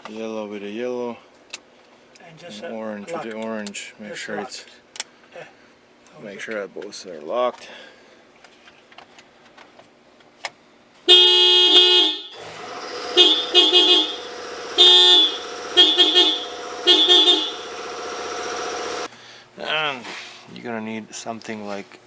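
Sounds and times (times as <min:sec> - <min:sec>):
car horn honking: 0:11.1 - 0:19.1
steady hum: 0:12.6 - 0:19.1.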